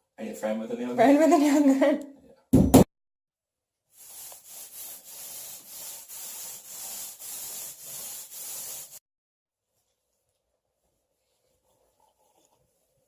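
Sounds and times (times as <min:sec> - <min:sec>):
rhythmic rubbing strokes: 0:04.0 - 0:09.0.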